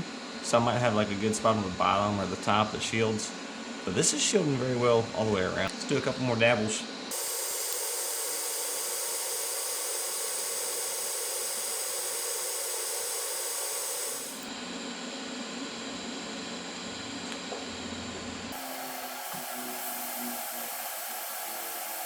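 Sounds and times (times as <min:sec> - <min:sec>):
welding arc hissing: 0:07.1 - 0:14.6, 0:18.5 - 0:22.0.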